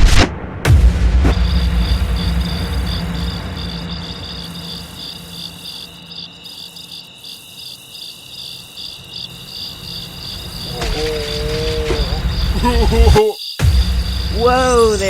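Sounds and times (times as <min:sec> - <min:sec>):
low hum: 0:00.0 - 0:06.4
crickets chirping: 0:01.2 - 0:15.0.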